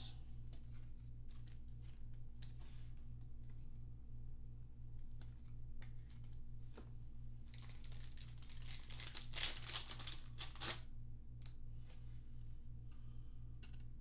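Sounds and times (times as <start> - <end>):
wrapper tearing and crinkling: 7.5 - 10.9.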